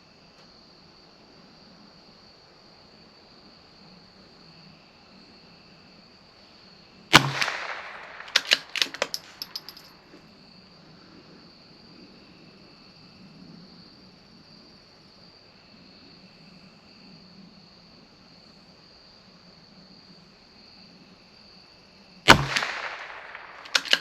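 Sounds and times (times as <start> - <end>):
crickets chirping: 0.0 - 24.0
rifle shot: 7.1 - 9.9, 22.3 - 24.0
light metallic clicks: 7.2 - 10.0, 22.3 - 24.0.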